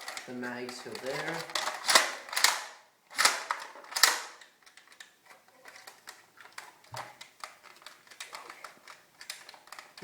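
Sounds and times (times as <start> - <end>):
plastic clacks: 0.0 - 10.0
faint plastic clicks: 3.2 - 10.0.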